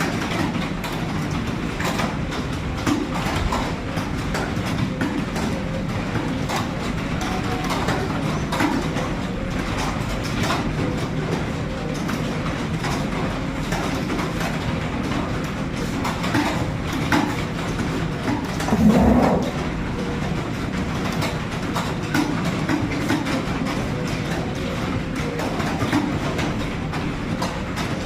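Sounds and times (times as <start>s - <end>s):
fast keyboard typing: 16.0s - 26.4s.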